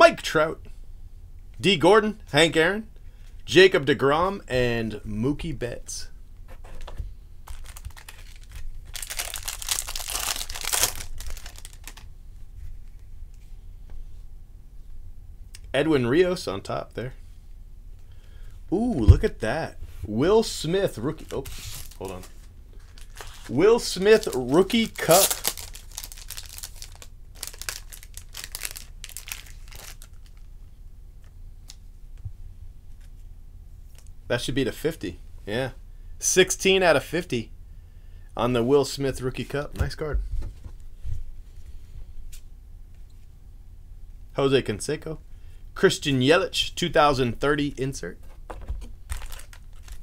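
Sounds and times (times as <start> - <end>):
foil wrapper crinkling and tearing: 7.4 - 12.1, 21.1 - 30.5, 49.0 - 50.0.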